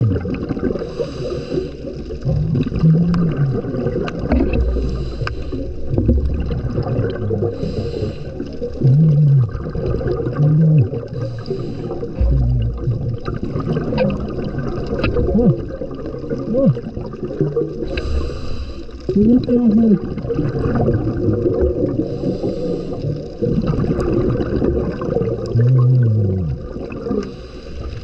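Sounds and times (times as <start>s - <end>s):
bubbling exhalations: 0.0s - 28.0s
scuba regulator hissing inhalation: 0.8s - 2.0s, 4.6s - 5.9s, 7.4s - 8.8s, 11.0s - 13.0s, 17.8s - 19.2s, 21.9s - 23.4s, 27.2s - 28.0s.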